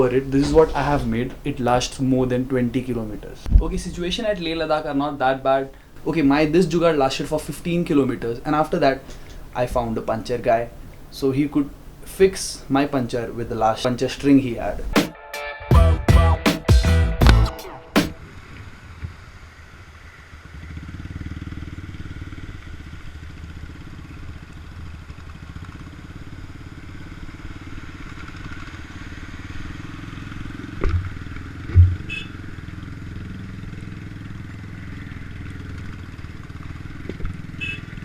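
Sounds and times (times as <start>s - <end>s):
heavy thumps: 0.2s - 1.5s, 30.8s - 32.3s
motorcycle engine running: 18.1s - 38.0s.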